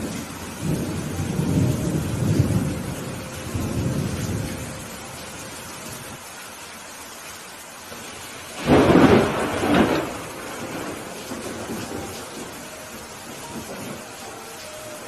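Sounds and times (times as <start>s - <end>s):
steady rain: 0.0s - 15.0s
thunderclap: 8.5s - 14.1s.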